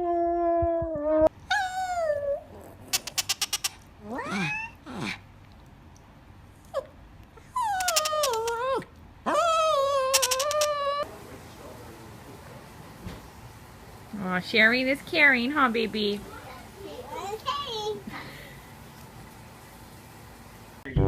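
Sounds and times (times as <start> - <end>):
quick clicks: 10.2 - 10.7.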